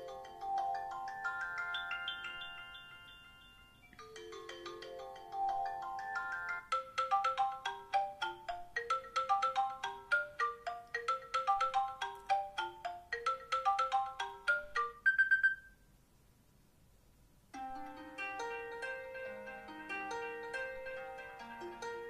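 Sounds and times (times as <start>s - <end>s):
chiming ringtone notes: 0.0s - 15.8s, 17.6s - 22.0s
phone ringtone bright notes: 0.0s - 15.8s.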